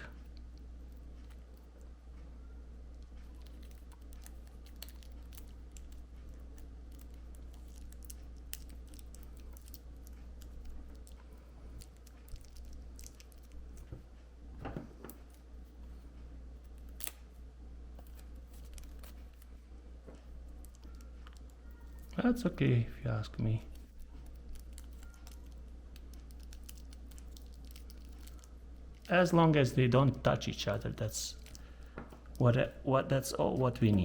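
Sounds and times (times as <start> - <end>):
steady low hum: 0.0 - 34.0
hands wrapping tape crinkling: 3.0 - 13.9, 16.6 - 17.2, 18.0 - 19.5, 23.7 - 29.3, 31.3 - 32.5.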